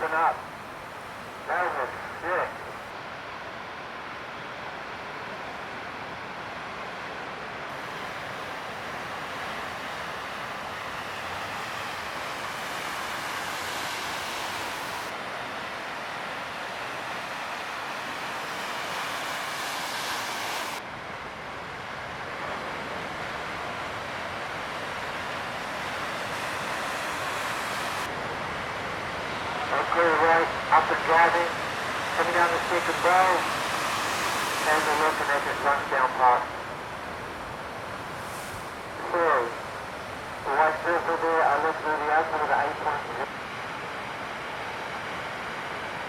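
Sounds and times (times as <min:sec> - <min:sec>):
ocean surf breaking: 0:07.8 - 0:20.8, 0:21.8 - 0:46.0.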